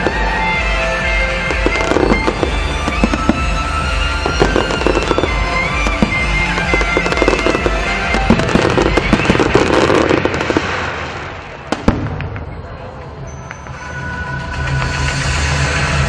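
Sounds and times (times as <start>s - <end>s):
music with held notes: 0.0s - 11.2s
fireworks bursting and crackling: 0.0s - 16.0s.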